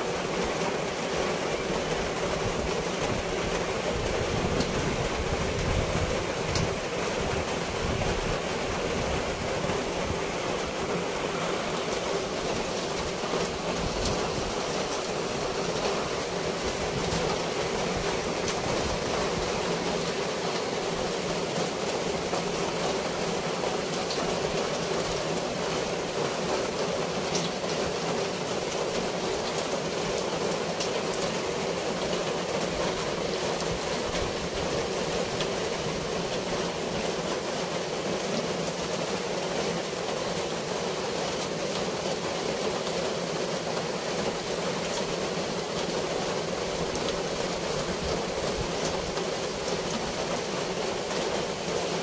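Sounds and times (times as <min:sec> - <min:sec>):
flowing water rushing: 0:00.0 - 0:52.0.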